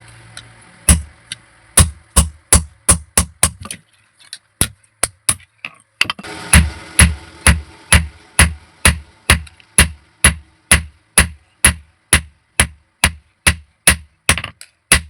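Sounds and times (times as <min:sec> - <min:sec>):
hammer striking metal: 0:00.9 - 0:01.1, 0:06.2 - 0:15.0.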